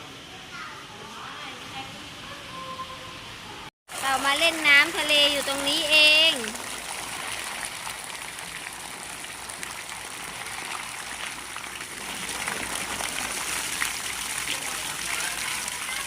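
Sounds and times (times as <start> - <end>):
small splashes: 3.9 - 16.0
water running and trickling: 3.9 - 16.0.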